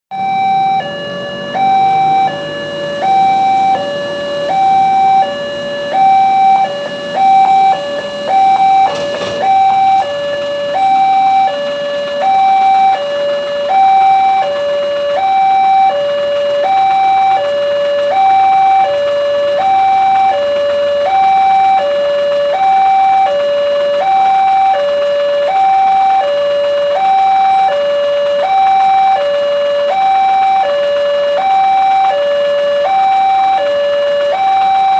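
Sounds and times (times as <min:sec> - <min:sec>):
two-tone crossing alarm: 0:00.1 - 0:34.9
sharp knock: 0:08.8 - 0:10.2.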